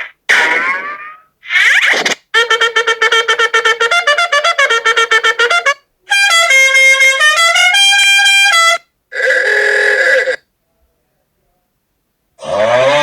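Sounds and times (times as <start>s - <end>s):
comedy trumpet sound effect: 0.0s - 10.4s.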